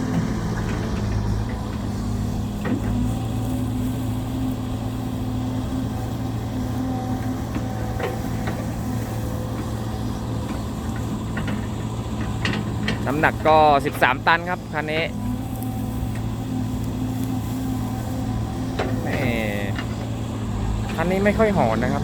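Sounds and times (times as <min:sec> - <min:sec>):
excavator diesel engine running: 0:00.0 - 0:22.0.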